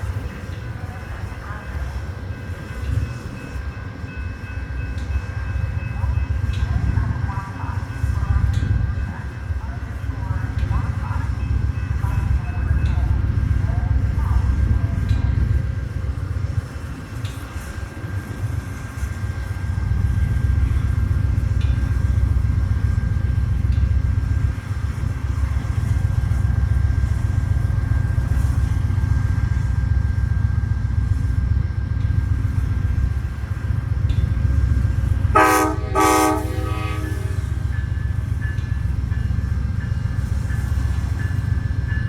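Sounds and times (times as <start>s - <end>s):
passenger train rumbling: 0.0s - 42.0s
locomotive air horn blasts: 35.3s - 37.6s.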